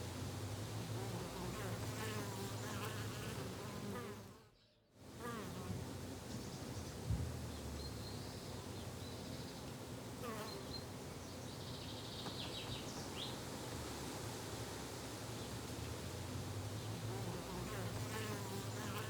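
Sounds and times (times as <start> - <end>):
flying insects buzzing: 0.9 - 4.6, 16.7 - 19.0.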